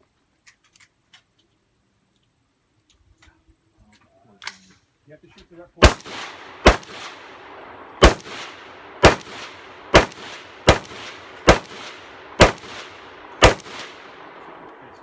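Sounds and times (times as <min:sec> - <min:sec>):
rifle shots: 0:05.8 - 0:14.7.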